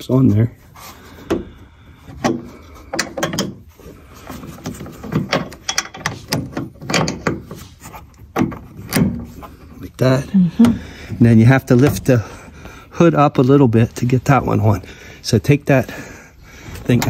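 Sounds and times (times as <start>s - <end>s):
metal clicks and knocks: 2.1s - 3.7s, 4.3s - 9.4s.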